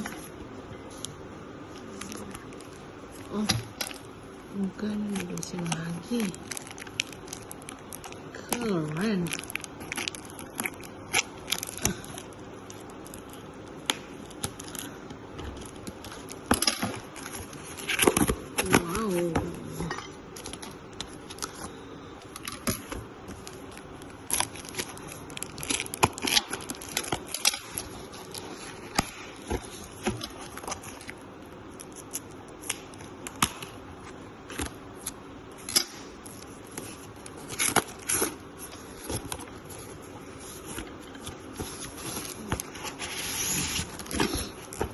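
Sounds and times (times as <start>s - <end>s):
packaging clicking and crinkling: 4.7s - 44.9s.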